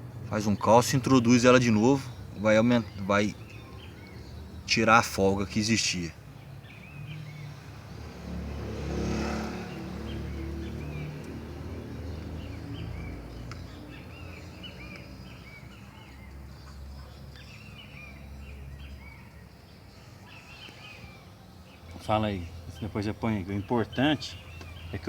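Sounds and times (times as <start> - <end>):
vehicle engine rumbling: 0.0 - 19.1
small birds chirping: 0.0 - 25.0.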